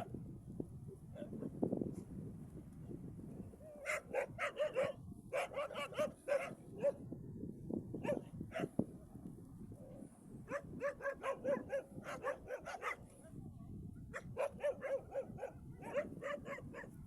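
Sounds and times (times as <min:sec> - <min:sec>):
dogs barking: 0:03.8 - 0:07.0, 0:08.0 - 0:08.7, 0:10.5 - 0:13.0, 0:14.2 - 0:17.0.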